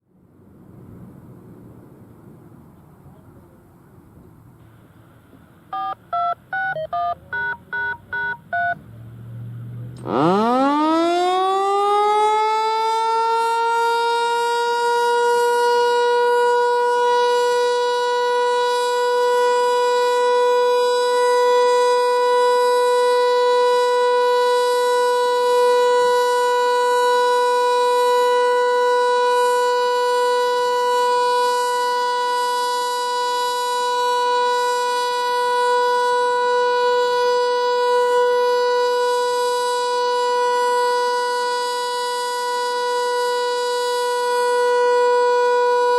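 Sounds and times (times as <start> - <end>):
rotating warning siren steady tone: 10.0 - 45.9.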